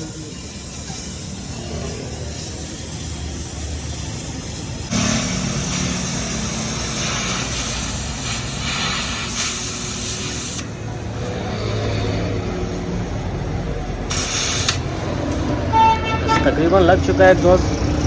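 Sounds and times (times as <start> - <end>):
low hum: 0.2 - 8.5
loud steady hiss: 4.8 - 15.4.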